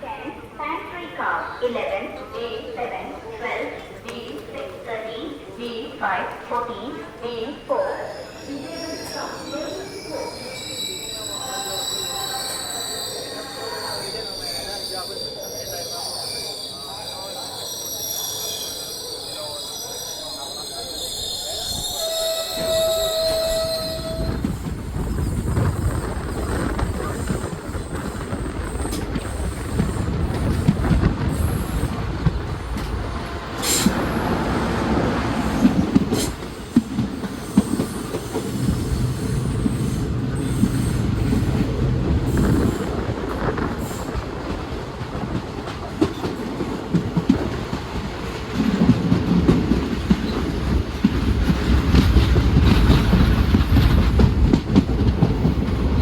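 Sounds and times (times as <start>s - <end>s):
train rumbling on rails: 0.0s - 56.0s
train wheel clatter: 20.6s - 56.0s.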